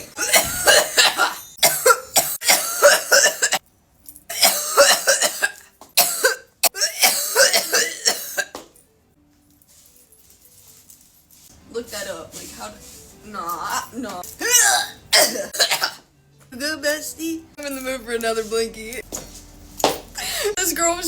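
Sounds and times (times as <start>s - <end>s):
woman coughing hard: 0.0s - 3.6s, 4.3s - 8.6s, 14.4s - 16.0s
woman gasping: 20.2s - 20.6s.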